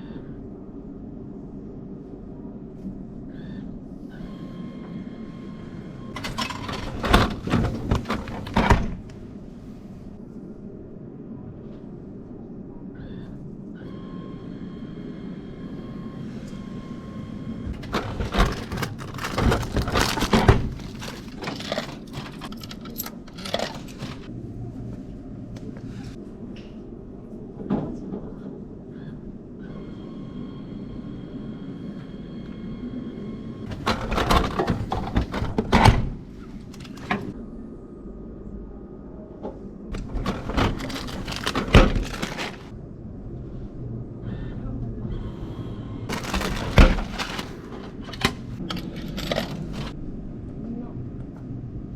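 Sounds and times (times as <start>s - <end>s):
vending machine humming: 0.0s - 26.2s, 28.7s - 51.9s
item clunking and rattling: 6.2s - 9.2s, 17.7s - 24.3s, 33.7s - 37.4s, 40.0s - 42.7s, 46.1s - 50.0s.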